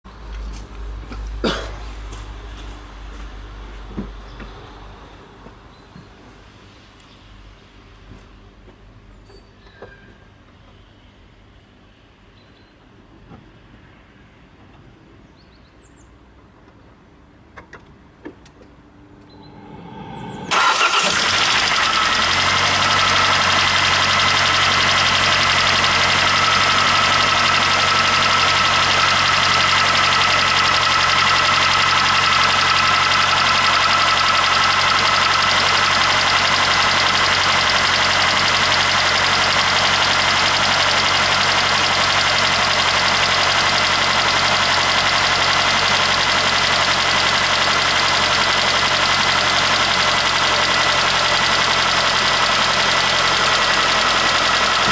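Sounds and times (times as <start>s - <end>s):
car engine starting and idling: 17.5s - 54.9s
engine knocking: 20.6s - 54.9s.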